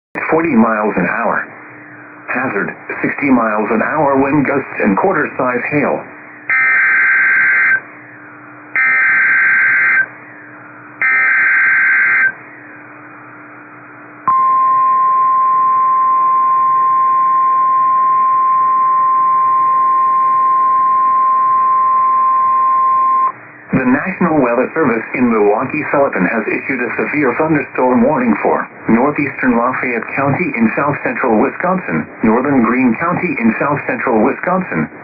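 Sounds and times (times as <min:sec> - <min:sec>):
steady alarm tone: 0:06.4 - 0:12.9, 0:14.2 - 0:24.5.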